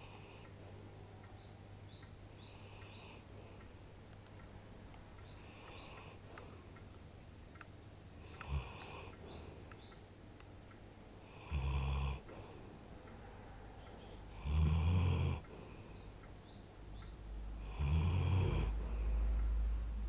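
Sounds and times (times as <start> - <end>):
dog snoring: 8.3 - 9.1, 11.3 - 12.2, 14.3 - 15.4, 17.6 - 19.1
dog breathing quietly: 18.6 - 20.0.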